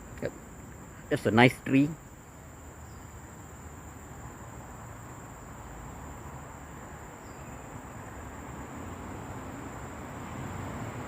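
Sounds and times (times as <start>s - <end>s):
high-pitched insect tone: 0.0s - 11.0s.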